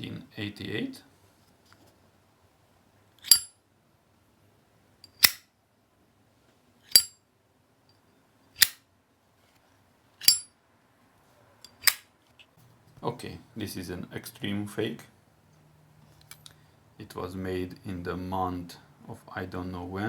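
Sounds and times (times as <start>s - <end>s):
lighter lid clicking open and shut: 5.2s - 5.4s.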